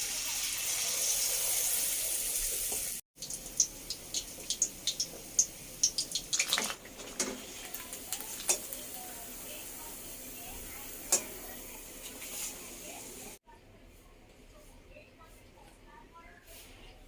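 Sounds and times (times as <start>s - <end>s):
oil sizzling: 0.0s - 13.4s
oil crackling and spitting: 3.2s - 8.6s.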